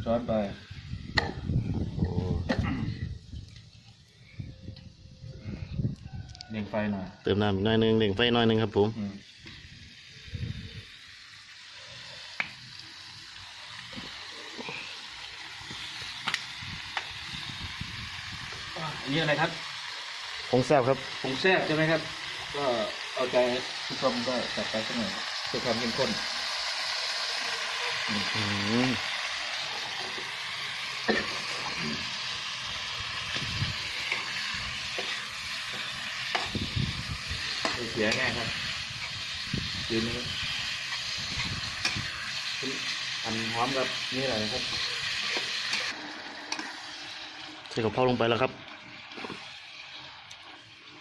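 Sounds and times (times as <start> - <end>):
meat sizzling in a pan: 8.7 - 51.0.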